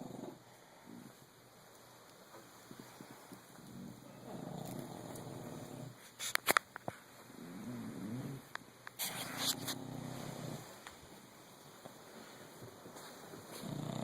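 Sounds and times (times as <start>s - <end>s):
dog snoring: 0.0s - 1.1s, 3.6s - 6.0s, 7.4s - 8.5s, 9.1s - 10.8s, 13.5s - 14.0s.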